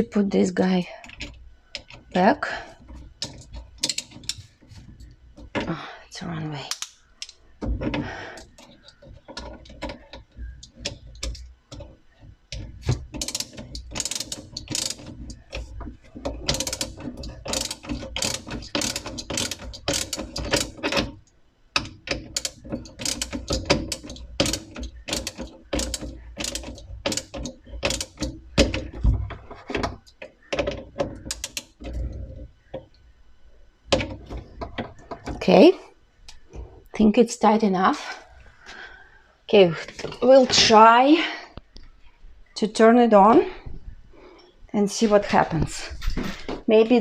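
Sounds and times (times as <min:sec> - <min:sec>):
ratchet tool clicking: 0:03.2 - 0:04.4, 0:13.2 - 0:15.7, 0:16.4 - 0:21.1, 0:21.8 - 0:28.3.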